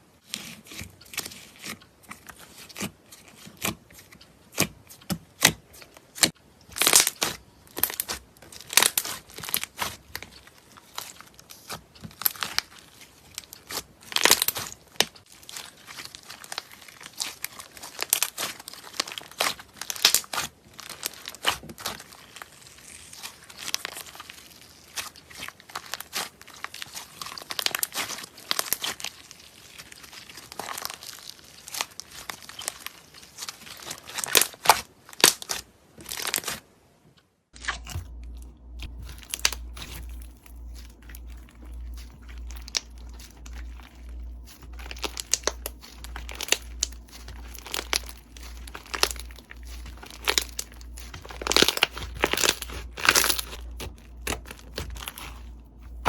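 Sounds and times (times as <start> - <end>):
slime crackling and popping: 5.4 - 36.6, 37.6 - 56.0
low pulsing hum: 37.6 - 56.0.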